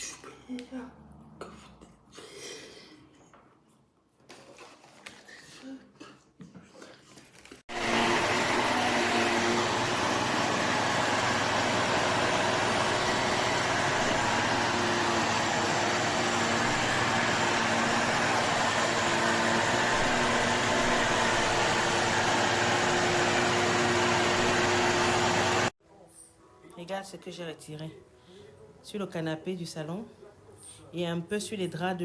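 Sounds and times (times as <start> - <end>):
handheld vacuum cleaner running: 7.7 - 25.8.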